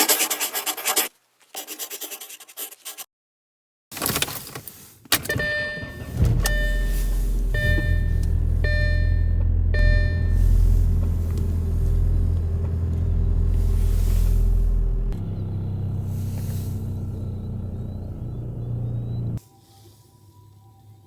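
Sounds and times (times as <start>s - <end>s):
car warning chime beeping: 5.2s - 13.5s
car engine idling: 5.4s - 19.4s.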